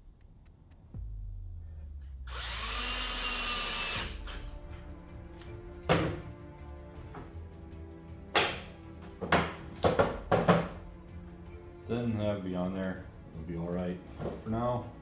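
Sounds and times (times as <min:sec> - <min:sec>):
power drill whirring: 0:02.2 - 0:04.6
sharp knock: 0:05.9 - 0:06.3, 0:08.4 - 0:08.7.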